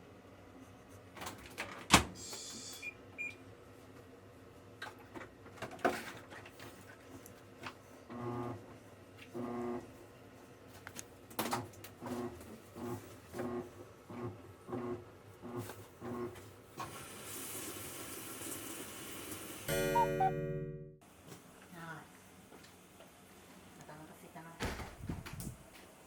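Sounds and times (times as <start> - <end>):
short beeps: 19.7 - 20.7.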